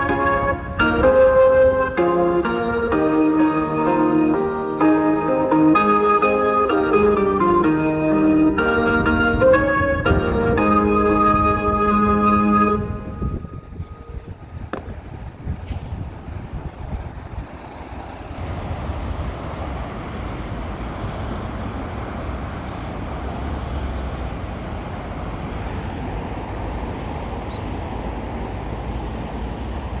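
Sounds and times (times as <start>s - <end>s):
road traffic passing: 0.0s - 30.0s.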